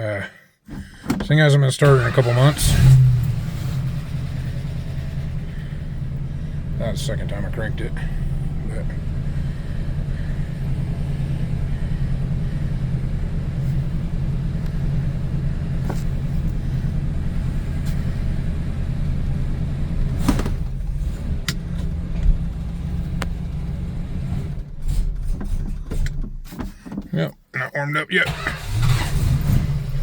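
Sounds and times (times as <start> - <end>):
car engine idling: 1.8 - 24.8.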